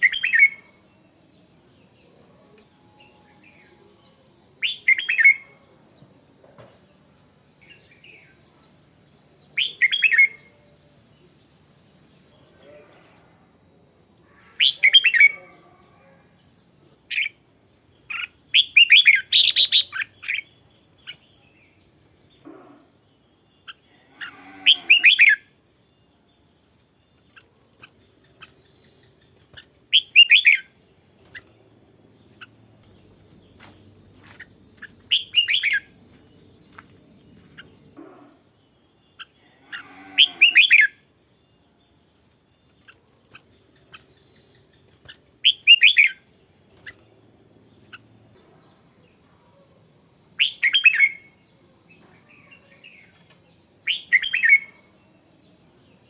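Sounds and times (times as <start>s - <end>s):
bird chirping song: 0.0s - 1.0s, 2.9s - 5.6s, 7.6s - 8.5s, 9.4s - 11.3s, 16.4s - 22.6s, 23.5s - 38.0s, 42.6s - 48.2s, 50.4s - 55.0s.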